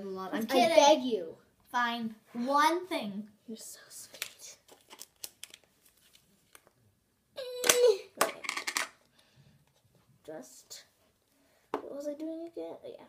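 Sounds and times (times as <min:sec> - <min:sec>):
crackly handling noise: 0:04.1 - 0:06.8.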